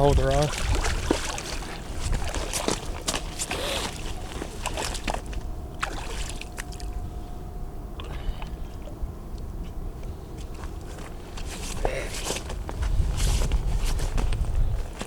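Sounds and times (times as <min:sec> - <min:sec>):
water splashing at shoreline: 0:00.0 - 0:07.0
low rumble: 0:00.0 - 0:11.9.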